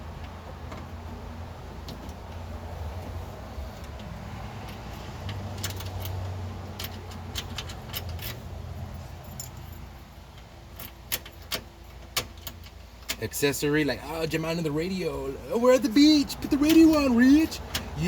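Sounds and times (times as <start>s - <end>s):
keys jangling on key ring: 9.2s - 10.0s.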